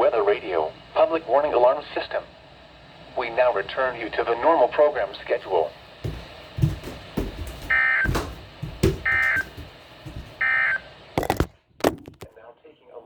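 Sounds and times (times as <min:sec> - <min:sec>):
low thumps: 0:06.0 - 0:10.6.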